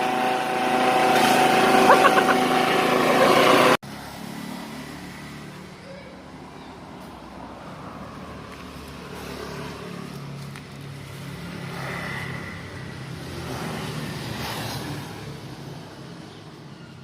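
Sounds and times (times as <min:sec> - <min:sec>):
chaff cutter machine humming: 0:00.0 - 0:03.8.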